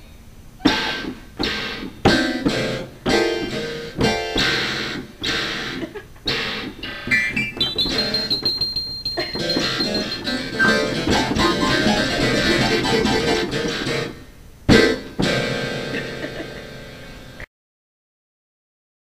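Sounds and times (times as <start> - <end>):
guitar chords: 9.3 - 17.1.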